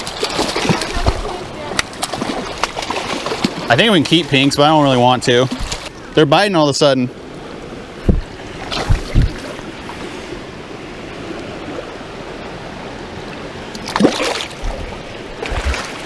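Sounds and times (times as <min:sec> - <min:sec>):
river water rushing: 0:00.0 - 0:16.0
low thumps: 0:08.0 - 0:09.4.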